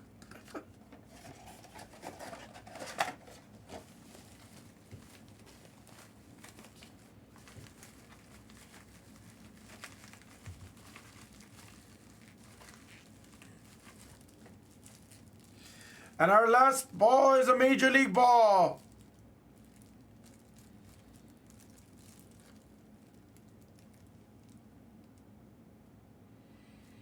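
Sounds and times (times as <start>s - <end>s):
packaging rustling and tearing: 1.1s - 16.2s, 18.8s - 24.6s.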